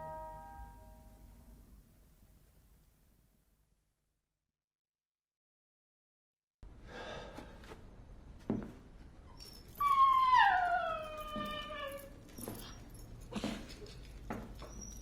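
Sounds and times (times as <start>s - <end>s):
animal whining cry: 9.8s - 12.2s.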